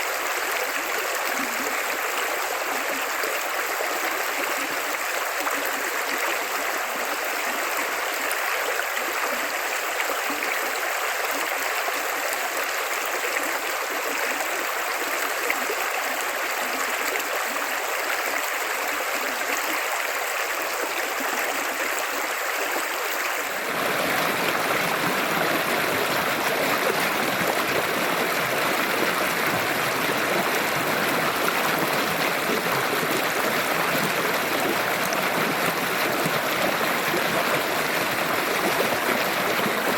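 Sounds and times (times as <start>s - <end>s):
river water rushing: 23.4s - 39.9s.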